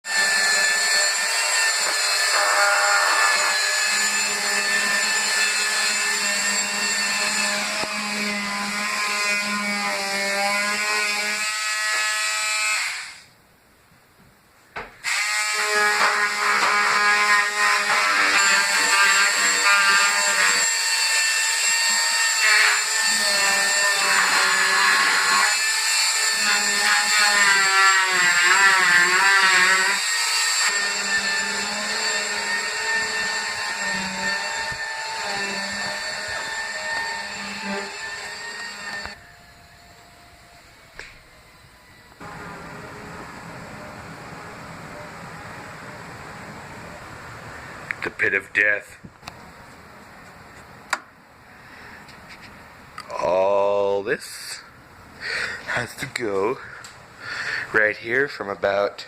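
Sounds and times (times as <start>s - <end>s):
electric sander whining: 22.3s - 40.1s.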